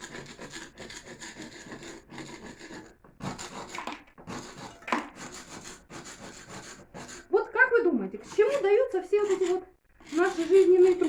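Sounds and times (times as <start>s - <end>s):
hand tool scraping mortar: 0.0s - 7.5s, 8.1s - 11.0s.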